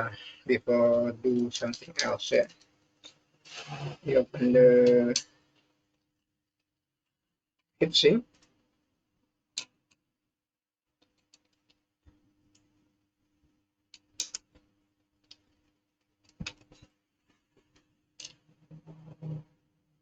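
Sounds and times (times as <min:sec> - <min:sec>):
faint steady hum: 0:00.0 - 0:06.0.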